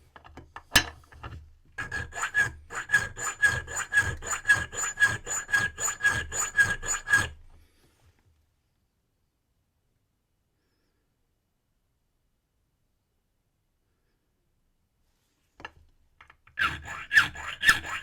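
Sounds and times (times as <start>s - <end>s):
file rasping on brass: 1.8s - 7.5s, 16.6s - 18.0s.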